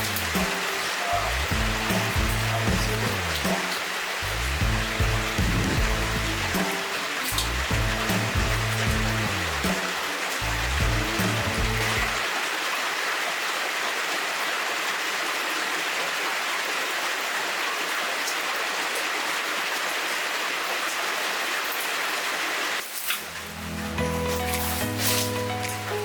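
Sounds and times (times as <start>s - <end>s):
background music: 0.0s - 12.2s, 23.2s - 26.0s
heavy rain falling: 0.0s - 26.0s.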